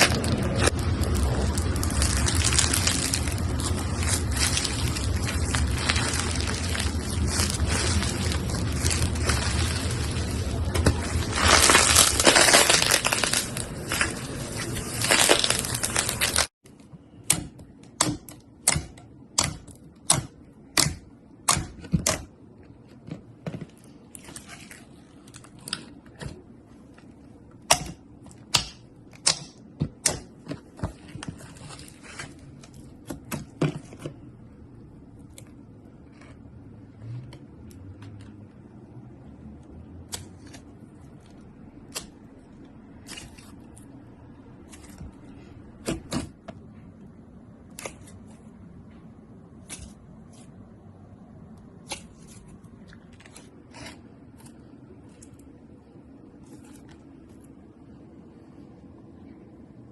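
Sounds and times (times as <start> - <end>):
slime crackling: 0.0 - 16.5.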